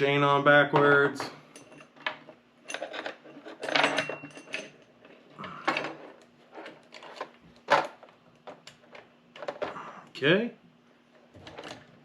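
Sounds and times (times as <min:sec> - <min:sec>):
metal chain clinks and rattles: 0:01.5 - 0:08.0.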